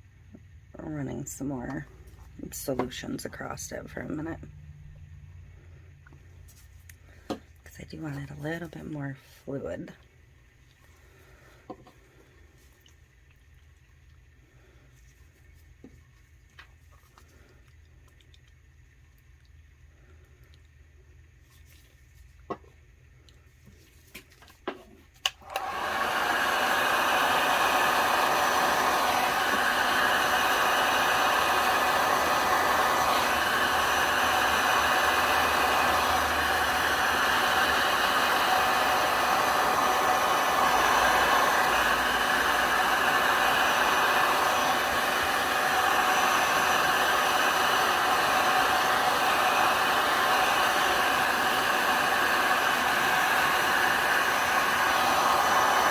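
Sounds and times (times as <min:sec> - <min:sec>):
hot-air blower whirring: 0:00.0 - 0:04.5, 0:05.6 - 0:10.0, 0:10.7 - 0:12.5, 0:24.6 - 0:55.9.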